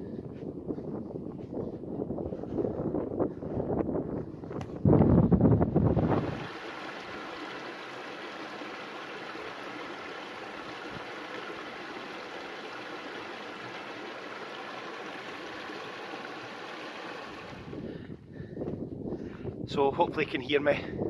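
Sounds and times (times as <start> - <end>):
stream water rushing: 5.9 - 17.8.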